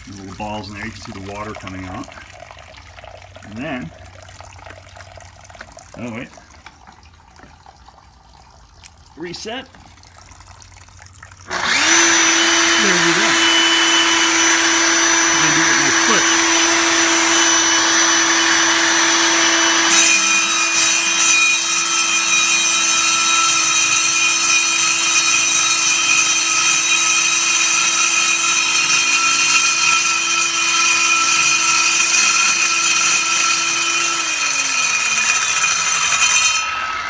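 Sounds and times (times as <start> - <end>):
core drill motor whine: 11.5 - 37.0
drill bit grinding concrete: 11.5 - 37.0.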